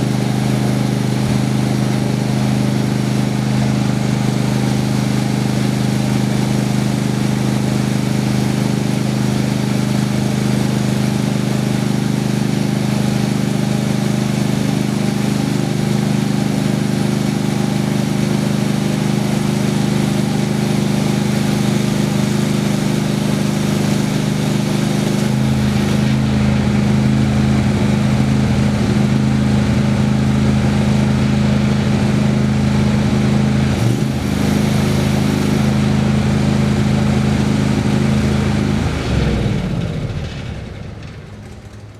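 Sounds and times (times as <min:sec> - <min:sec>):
sawmill engine running: 0:00.0 - 0:41.9
saw cutting wood: 0:02.6 - 0:27.4, 0:33.7 - 0:36.3.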